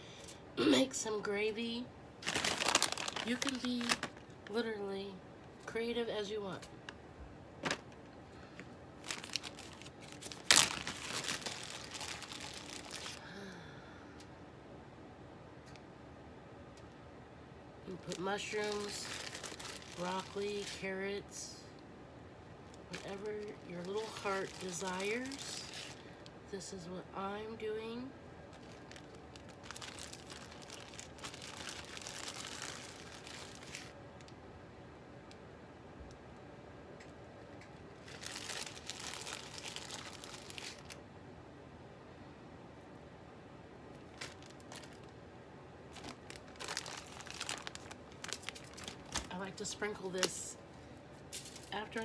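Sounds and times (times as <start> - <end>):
plastic packaging crinkling: 2.2 - 4.6, 8.6 - 13.2, 17.9 - 21.0, 22.6 - 26.4, 28.5 - 34.4, 38.0 - 41.0, 44.0 - 45.2, 45.9 - 50.4, 51.3 - 52.0.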